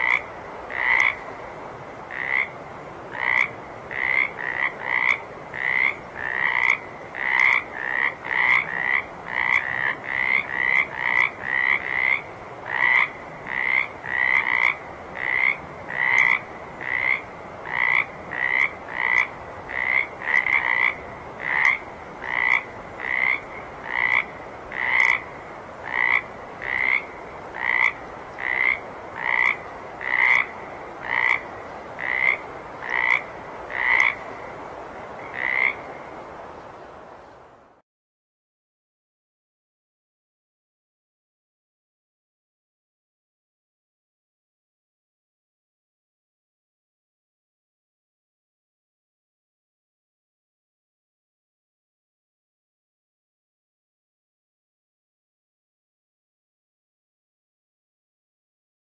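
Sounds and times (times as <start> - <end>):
frog croaking: 0.0 - 1.2, 2.1 - 36.0.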